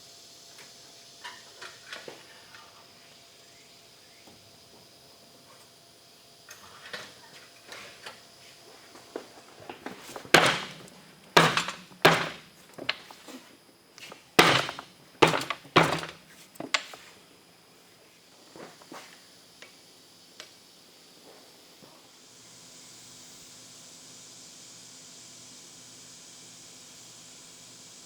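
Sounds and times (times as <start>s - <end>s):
steady hiss: 0.0s - 28.0s
hammer striking metal: 10.4s - 10.8s, 11.4s - 12.4s, 14.4s - 16.2s.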